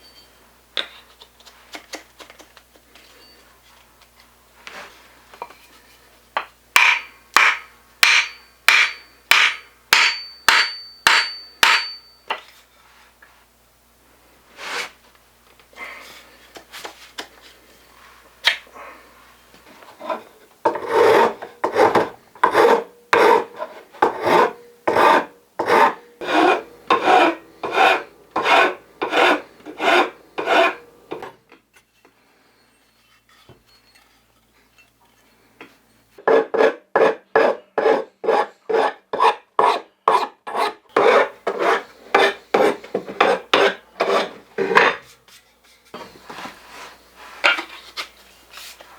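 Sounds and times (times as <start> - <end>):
hand file rasping strokes: 20.0 - 31.2, 36.2 - 44.7.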